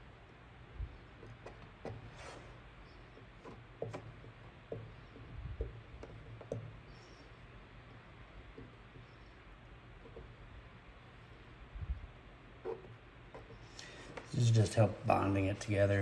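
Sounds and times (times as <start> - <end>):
soft scrape: 2.0 - 2.6
tool clicking and tapping on plastic: 3.2 - 6.8.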